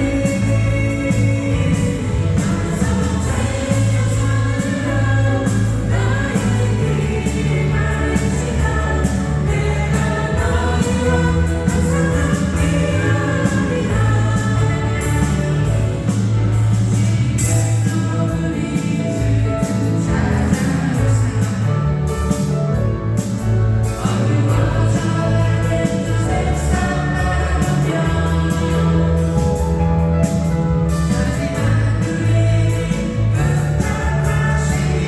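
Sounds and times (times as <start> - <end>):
group of voices singing: 0.0 - 35.0
instrumental accompaniment: 0.0 - 35.0.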